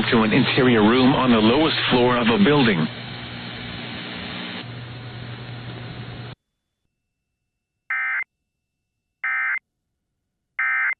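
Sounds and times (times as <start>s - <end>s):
radio static with low hum: 0.0s - 6.4s.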